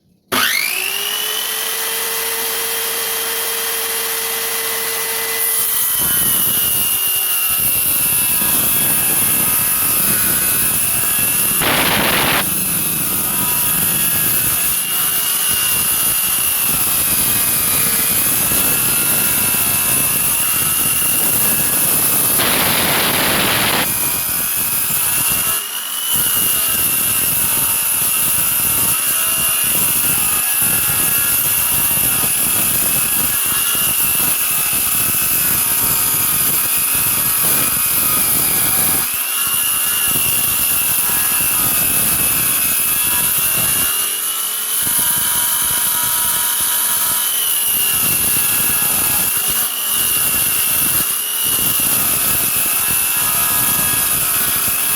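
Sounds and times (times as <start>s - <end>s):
table saw whining: 0.1s - 54.9s.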